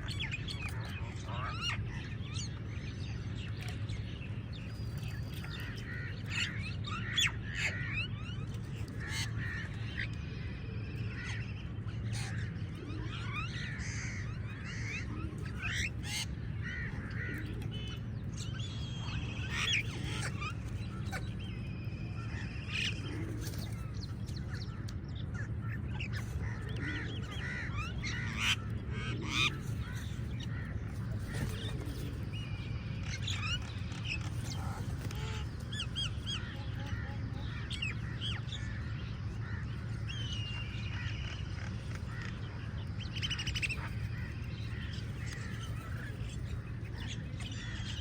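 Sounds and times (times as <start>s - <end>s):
low background hum: 0.0s - 48.0s
crows cawing: 26.4s - 31.8s.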